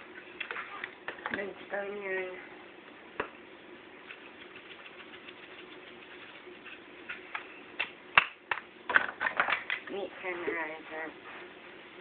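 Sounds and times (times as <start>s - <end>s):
seasoning shaker rattling: 4.0s - 7.4s.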